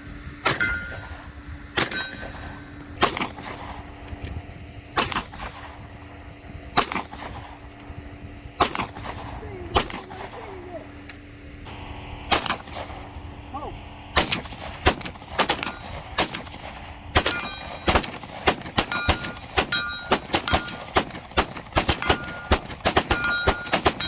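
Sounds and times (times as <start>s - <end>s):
gunshots: 1.8s - 3.9s, 5.0s - 5.9s, 6.8s - 7.7s, 8.6s - 10.6s, 12.2s - 24.0s.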